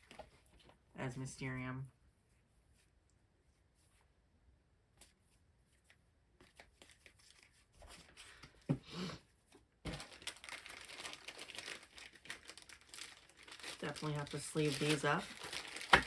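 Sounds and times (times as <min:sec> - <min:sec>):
plastic wrapping crinkling and tearing: 0:09.9 - 0:16.0.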